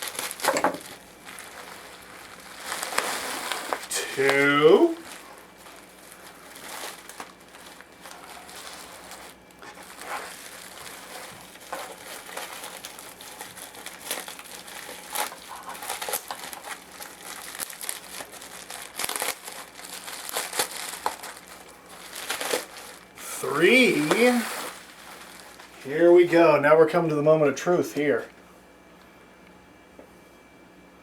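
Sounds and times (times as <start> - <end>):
plastic and bubble wrap crinkling: 0.0 - 27.0.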